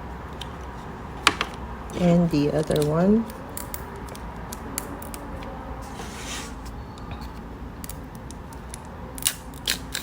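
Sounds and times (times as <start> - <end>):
scratchy rustle: 5.8 - 6.7.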